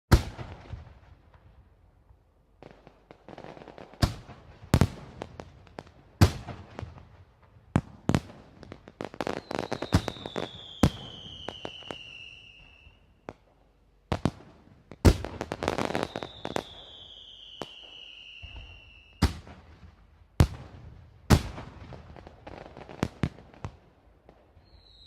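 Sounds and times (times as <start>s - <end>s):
fireworks bangs: 0.1s - 1.5s, 2.6s - 13.5s.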